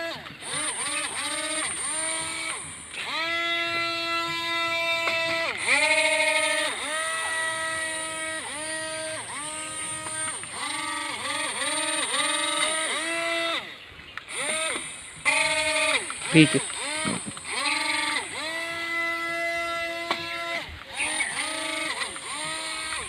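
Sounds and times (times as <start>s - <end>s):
small motor whining: 0.0s - 23.0s.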